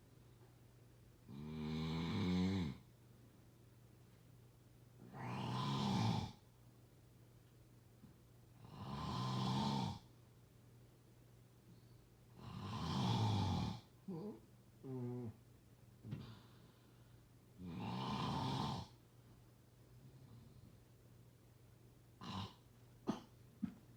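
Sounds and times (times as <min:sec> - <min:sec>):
person snoring loudly: 0:01.3 - 0:02.8, 0:05.1 - 0:06.4, 0:08.6 - 0:10.0, 0:12.4 - 0:13.9, 0:17.6 - 0:19.0, 0:22.2 - 0:22.6.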